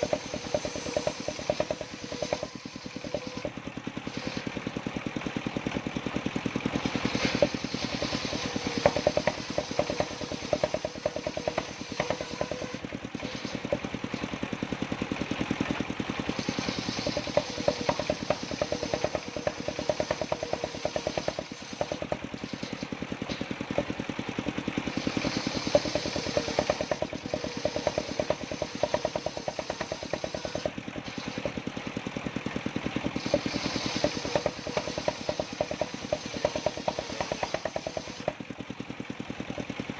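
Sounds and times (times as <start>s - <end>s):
saw blade cutting wood: 0.0s - 4.8s, 6.8s - 14.5s, 16.2s - 24.0s, 24.8s - 38.4s
sawmill engine chugging: 0.0s - 39.9s.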